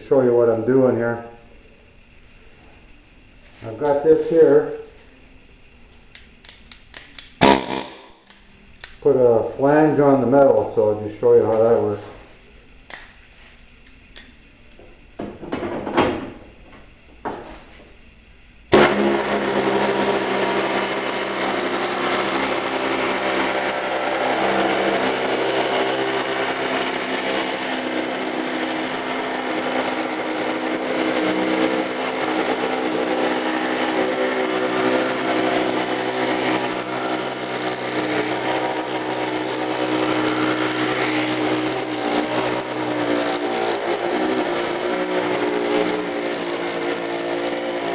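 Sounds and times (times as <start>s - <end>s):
power tool whining: 6.1s - 9.1s, 18.7s - 47.9s.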